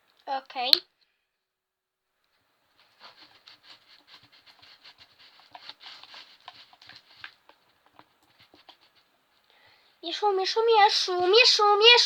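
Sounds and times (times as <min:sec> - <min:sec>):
slime being stirred: 0:02.8 - 0:09.1.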